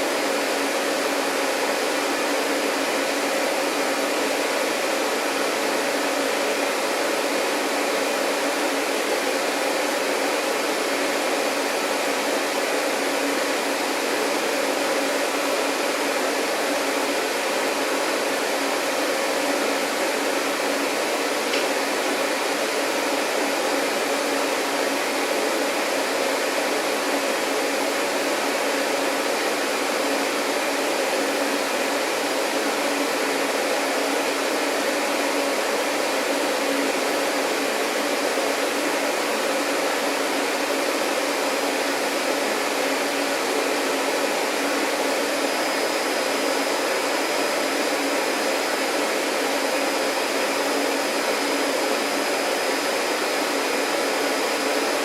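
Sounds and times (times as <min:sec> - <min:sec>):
vacuum cleaner running: 0:00.0 - 0:55.0.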